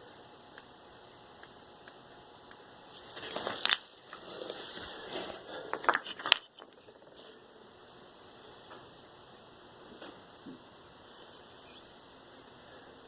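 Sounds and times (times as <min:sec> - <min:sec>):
small hard objects clattering: 0:03.0 - 0:07.2.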